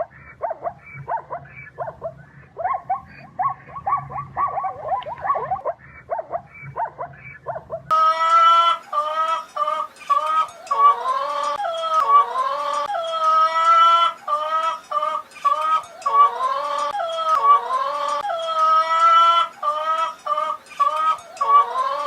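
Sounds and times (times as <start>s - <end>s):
dog yipping and whimpering: 0.4s - 7.9s
dog howling: 9.8s - 22.0s.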